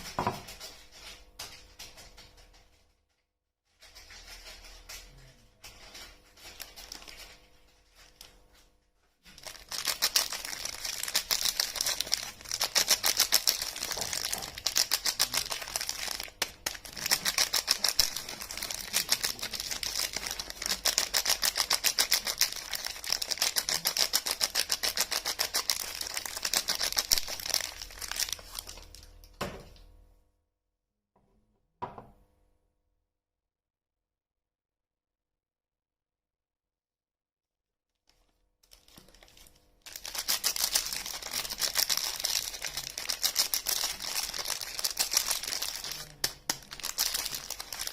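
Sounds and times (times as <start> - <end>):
soap packaging crackling: 6.4 - 7.3, 9.3 - 29.2, 38.6 - 47.9.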